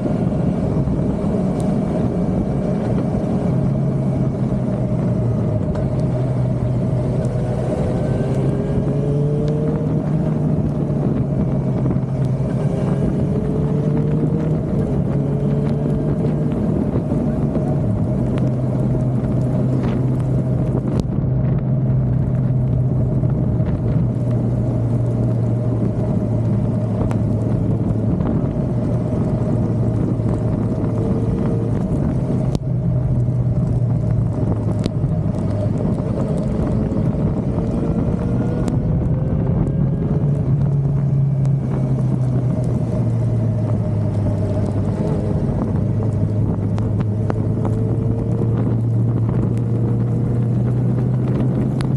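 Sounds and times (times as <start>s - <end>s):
motorcycle engine running: 0.0s - 51.9s
wind and road noise: 0.0s - 51.9s.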